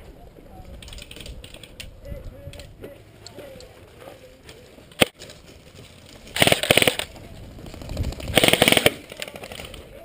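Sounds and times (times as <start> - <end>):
airsoft gun full-auto bursts: 6.4 - 7.1, 8.3 - 9.0.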